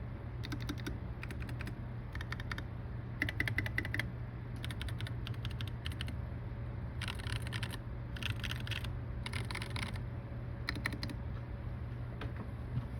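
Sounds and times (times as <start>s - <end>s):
steady low hum: 0.0s - 12.9s
mechanical keyboard typing clicks: 0.4s - 6.2s, 7.0s - 10.0s, 10.7s - 11.2s.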